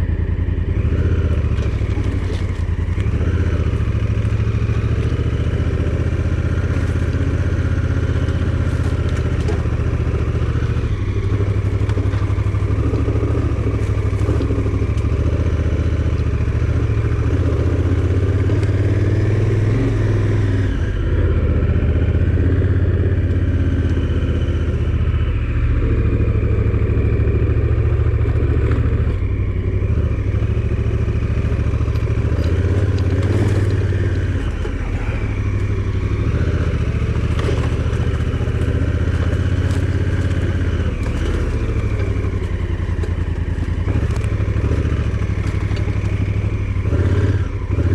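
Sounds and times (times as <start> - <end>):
vehicle engine running: 0.0 - 47.9
rattles and clatter: 1.0 - 19.5, 30.2 - 47.9.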